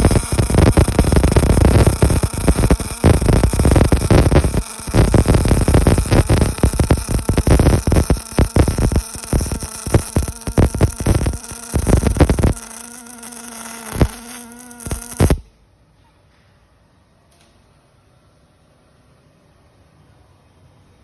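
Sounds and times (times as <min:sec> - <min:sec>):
welding arc crackling and popping: 0:00.0 - 0:15.5.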